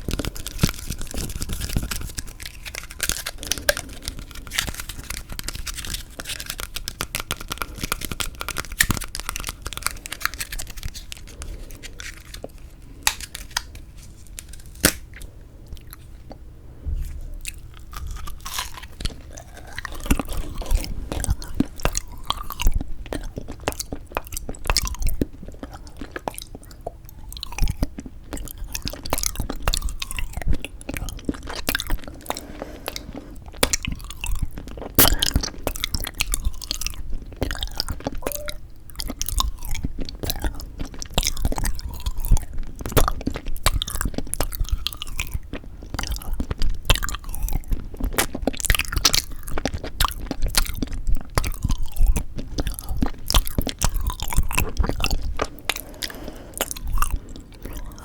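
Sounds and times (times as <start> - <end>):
crackly biting and chewing: 0.0 - 16.4, 17.4 - 58.0.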